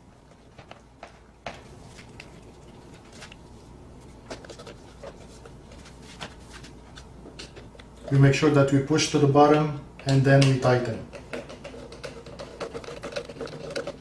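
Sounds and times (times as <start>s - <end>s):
low background hum: 0.0s - 14.0s.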